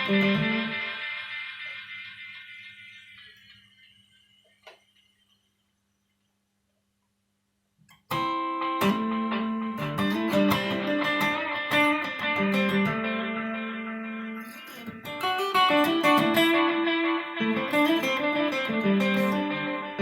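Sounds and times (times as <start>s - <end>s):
electric guitar playing: 0.0s - 3.3s, 8.1s - 20.0s.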